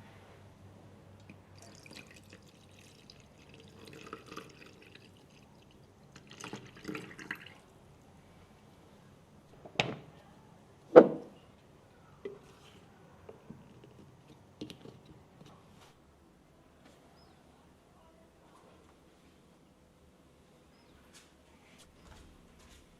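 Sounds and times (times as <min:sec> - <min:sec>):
water trickling and splashing: 0:01.6 - 0:07.7.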